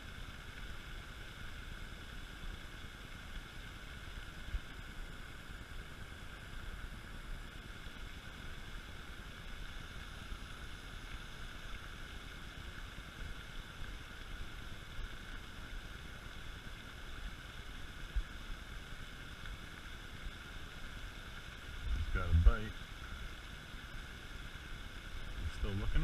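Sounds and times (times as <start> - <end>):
high-pitched hiss: 6.6 - 26.0
low rumble: 21.8 - 22.5.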